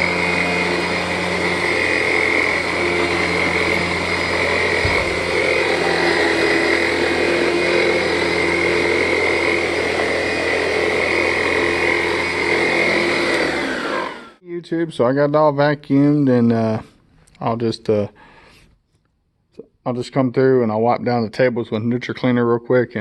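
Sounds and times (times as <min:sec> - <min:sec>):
vacuum cleaner running over carpet: 0:00.0 - 0:14.4.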